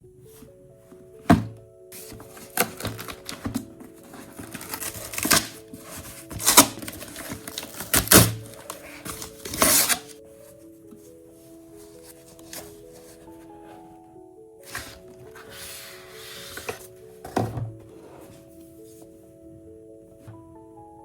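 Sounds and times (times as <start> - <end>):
soft background music: 0.0 - 21.0
dull thuds: 1.2 - 4.7
packaging taps and crinkles: 2.0 - 10.1.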